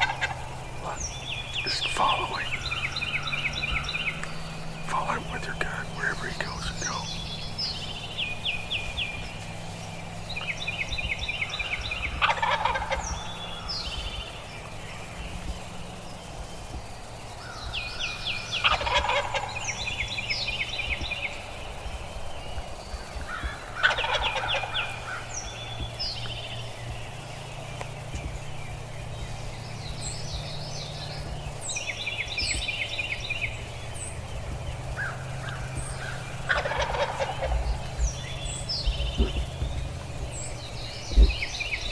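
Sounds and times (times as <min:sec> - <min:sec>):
turkey gobbling: 0:00.0 - 0:02.1, 0:12.1 - 0:13.2, 0:18.6 - 0:19.6, 0:23.7 - 0:25.2, 0:36.0 - 0:37.8.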